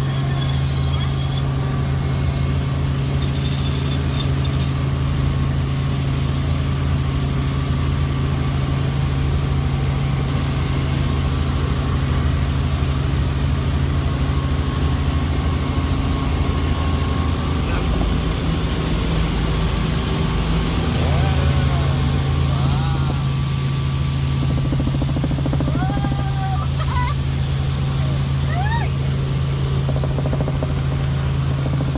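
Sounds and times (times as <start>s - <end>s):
helicopter engine and rotor: 0.0s - 31.9s.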